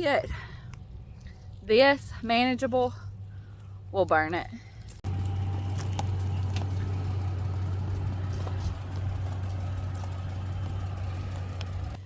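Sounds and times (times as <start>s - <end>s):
truck engine idling: 5.0s - 12.0s.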